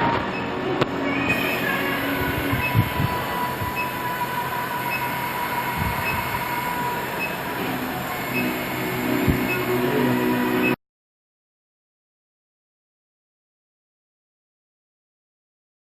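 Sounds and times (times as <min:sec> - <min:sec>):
machine mechanical drone: 0:00.0 - 0:10.8
thin high tone: 0:00.0 - 0:10.8.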